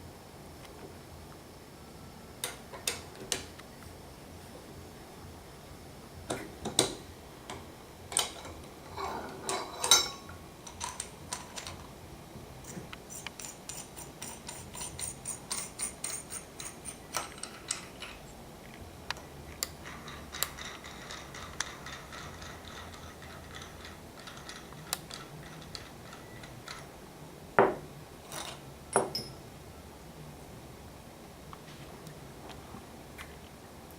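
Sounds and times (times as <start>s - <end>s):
metal tools clinking and knocking: 6.6s - 11.8s, 12.6s - 18.3s, 19.8s - 26.9s, 27.6s - 29.4s
faint metallic ringing: 7.5s - 11.0s, 12.6s - 18.4s, 27.6s - 29.6s.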